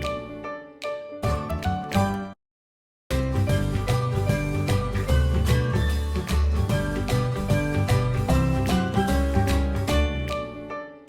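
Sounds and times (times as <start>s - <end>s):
light plucked instrumental music: 3.1s - 11.0s.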